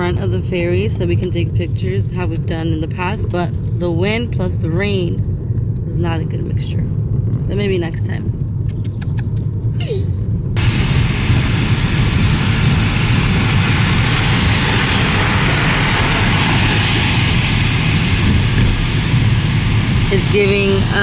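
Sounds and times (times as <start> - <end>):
ferry engine rumble: 0.0 - 21.0
wind and rain rushing: 10.5 - 21.0.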